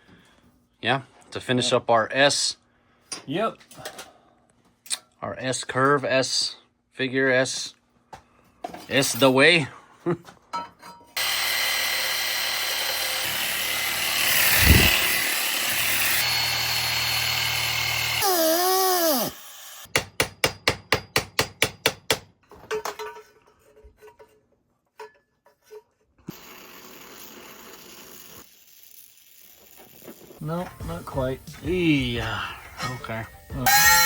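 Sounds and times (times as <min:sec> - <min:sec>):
power tool cutting steel pipe: 0:11.2 - 0:19.9, 0:26.3 - 0:31.0, 0:33.6 - 0:34.0.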